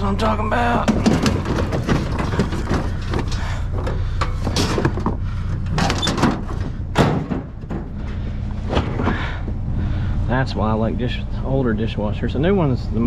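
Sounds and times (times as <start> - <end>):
vehicle engine idling: 0.0 - 13.0
scrap metal clanking: 0.8 - 9.6.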